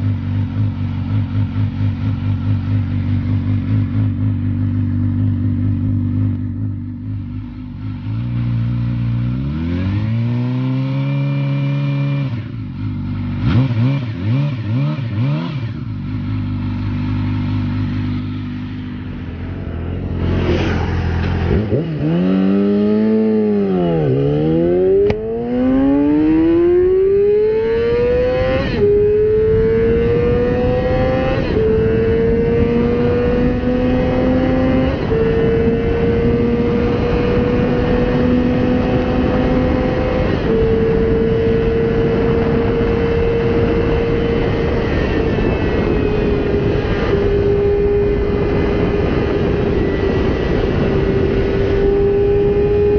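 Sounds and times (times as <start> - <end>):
motorcycle engine accelerating: 0.0 - 52.9
wind and road noise: 0.0 - 52.9.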